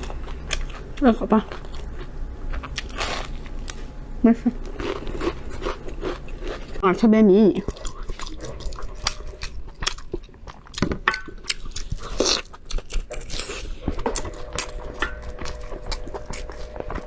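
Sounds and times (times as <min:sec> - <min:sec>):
crunching and chewing fried food: 0:00.0 - 0:17.0.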